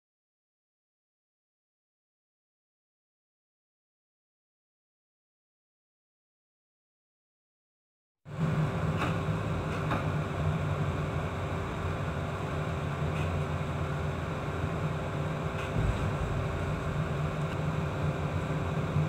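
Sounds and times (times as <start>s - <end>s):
ship machinery hum: 8.3s - 19.0s.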